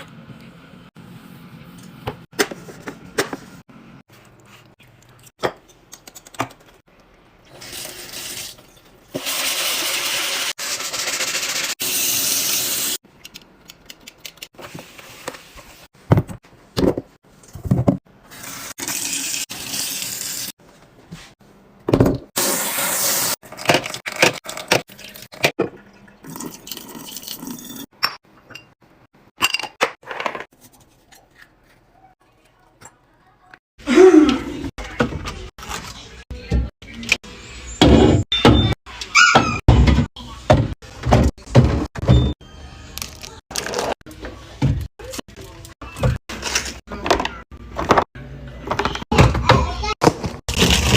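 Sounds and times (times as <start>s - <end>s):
liquid pouring into containers: 23.5s - 27.8s.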